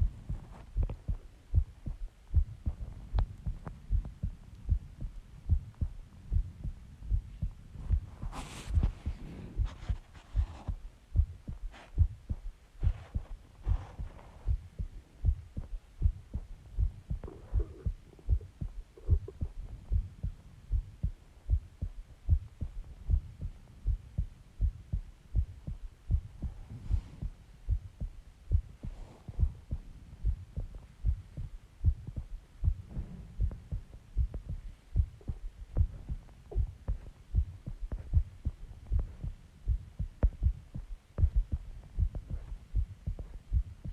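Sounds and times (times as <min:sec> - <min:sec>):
heartbeat thumps: 0:00.0 - 0:43.9.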